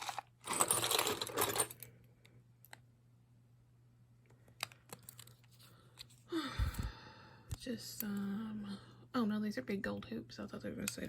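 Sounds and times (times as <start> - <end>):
jewelry rustling and jingling: 0.0 - 1.9.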